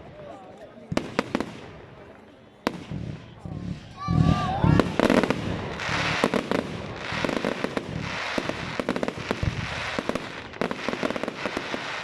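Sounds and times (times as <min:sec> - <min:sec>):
fireworks crackling and popping: 0:00.0 - 0:12.0
deep firework bang: 0:02.7 - 0:09.8.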